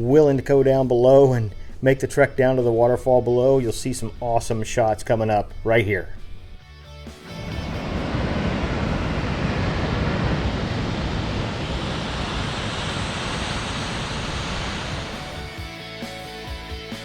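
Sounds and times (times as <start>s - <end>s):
waterfall rushing: 7.3s - 15.6s.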